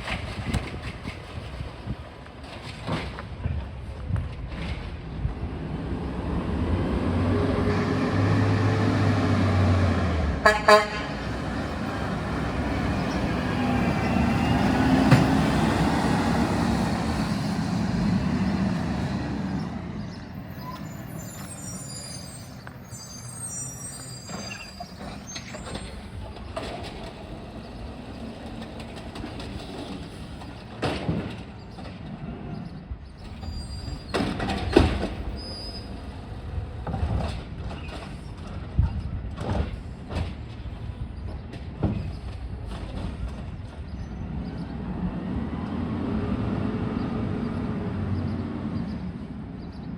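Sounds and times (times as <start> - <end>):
garbage truck running: 0.0 - 32.6.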